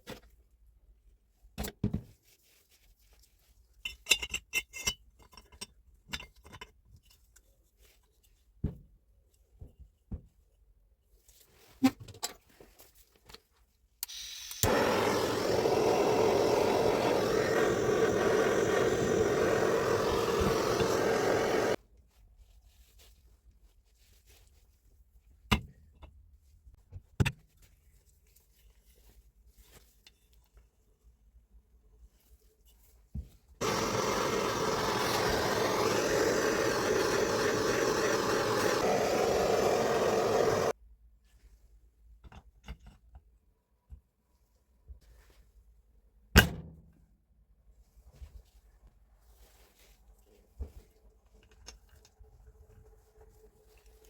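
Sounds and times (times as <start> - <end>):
rotary hammer running: 14.6 - 21.8, 33.6 - 40.7.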